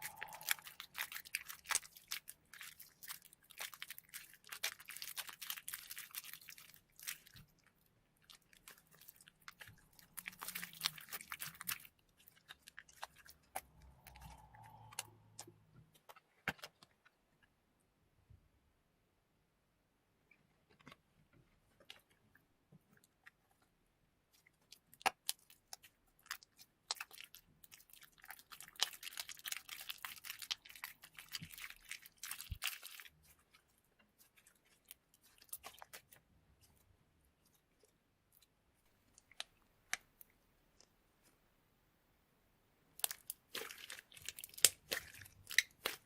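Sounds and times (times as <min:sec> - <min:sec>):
hands squishing slime: 0:00.0 - 0:16.8, 0:24.3 - 0:40.9, 0:42.9 - 0:46.0.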